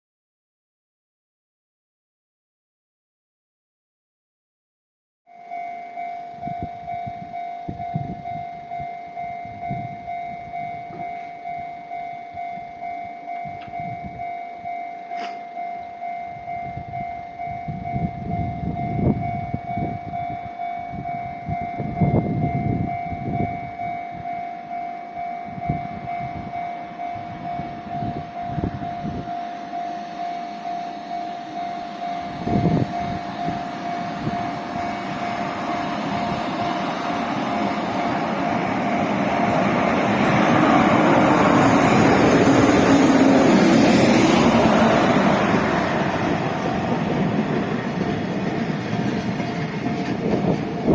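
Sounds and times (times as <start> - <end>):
level crossing alarm ringing: 5.3 - 43.2
approaching train rush: 12.3 - 50.9.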